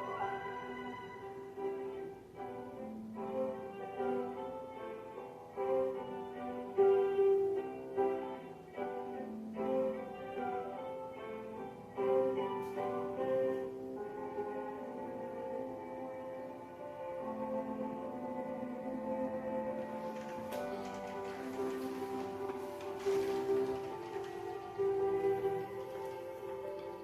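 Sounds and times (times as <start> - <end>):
slow instrumental music: 0.0 - 27.0.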